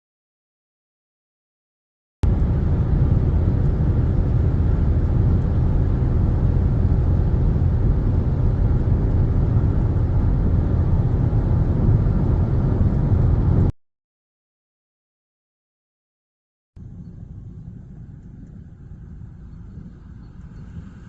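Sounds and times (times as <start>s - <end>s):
vehicle rumble on the move: 2.2s - 13.8s, 16.8s - 21.0s.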